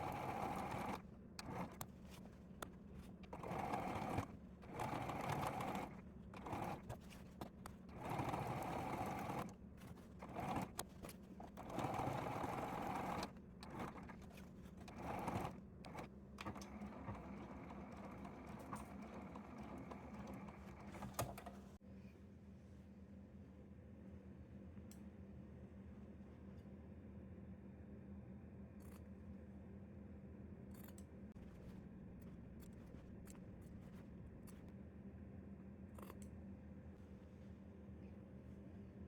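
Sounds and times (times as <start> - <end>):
electric sewing machine stitching: 0.0 - 1.8, 3.2 - 7.0, 7.9 - 10.9, 11.5 - 21.4.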